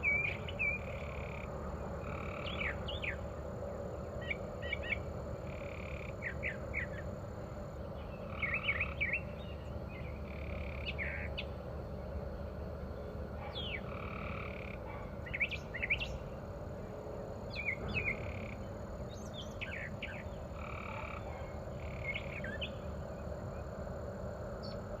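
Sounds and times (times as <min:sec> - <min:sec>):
low outdoor rumble: 0:00.0 - 0:25.0.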